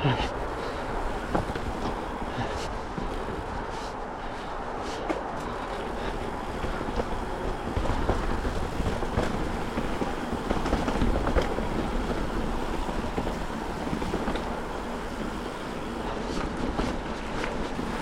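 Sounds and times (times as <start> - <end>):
tyres rumbling on dirt: 0.0 - 18.0
wind buffeting microphone: 0.0 - 18.0
bike rattling and knocking: 0.4 - 18.0.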